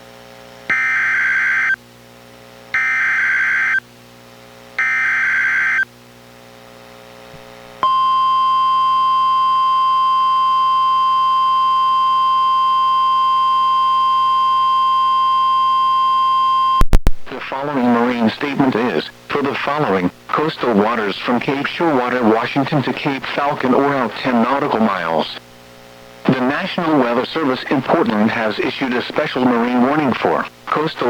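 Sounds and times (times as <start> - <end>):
steady warning alarm tone: 0.7 - 1.8, 2.8 - 3.8, 4.8 - 5.9, 7.8 - 16.8.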